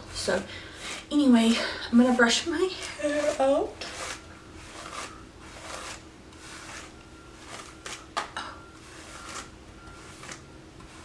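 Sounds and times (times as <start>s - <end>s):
hairbrush swishing through hair: 2.1s - 8.1s, 8.8s - 11.0s.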